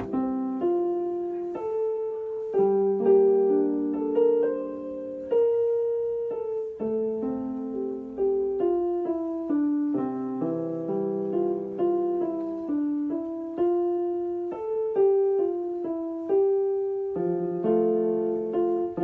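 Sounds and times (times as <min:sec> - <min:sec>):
gentle piano melody: 0:00.0 - 0:19.0.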